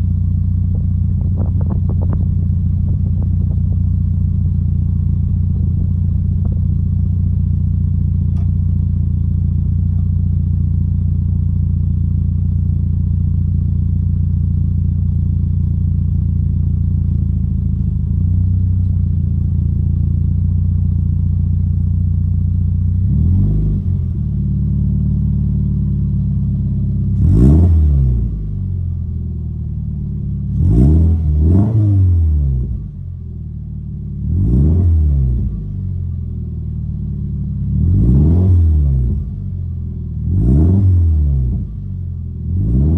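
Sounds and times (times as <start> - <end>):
car engine revving: 0.0 - 11.1, 22.9 - 32.9, 34.1 - 35.9, 36.9 - 41.8, 42.4 - 42.9
car engine idling: 0.0 - 38.2, 38.9 - 40.4.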